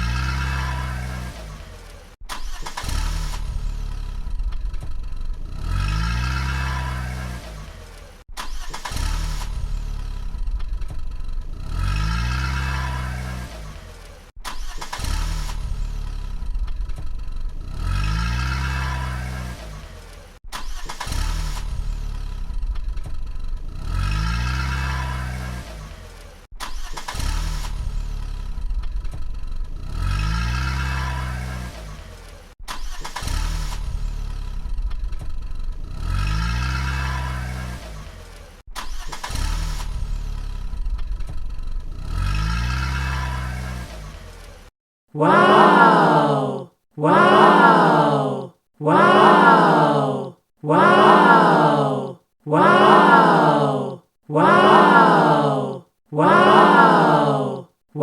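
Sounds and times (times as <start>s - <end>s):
car engine revving: 0.0s - 44.7s.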